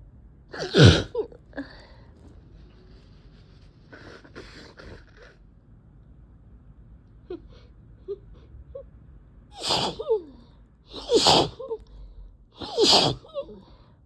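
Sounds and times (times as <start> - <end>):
person sneezing: 0.6 - 1.2, 9.6 - 10.1, 10.9 - 11.7, 12.6 - 13.5.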